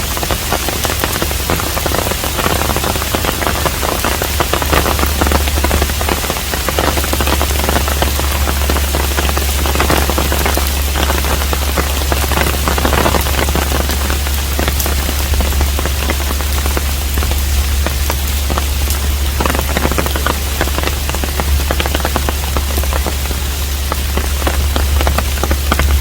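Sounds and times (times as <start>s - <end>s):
low rumble: 0.0s - 26.0s
rain falling on a roof: 0.0s - 26.0s.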